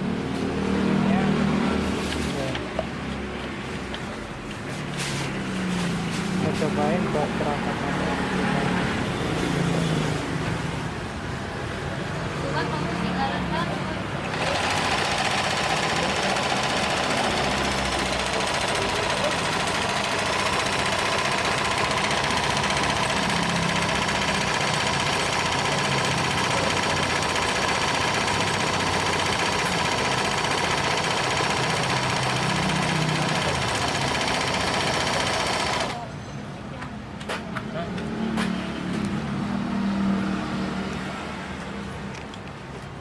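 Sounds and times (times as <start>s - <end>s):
sewing machine running: 14.1s - 36.1s.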